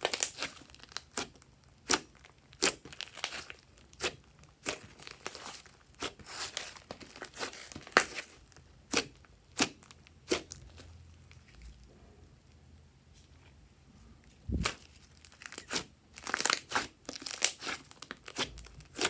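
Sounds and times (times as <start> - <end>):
slime squelching: 0.0 - 13.4, 14.2 - 19.0.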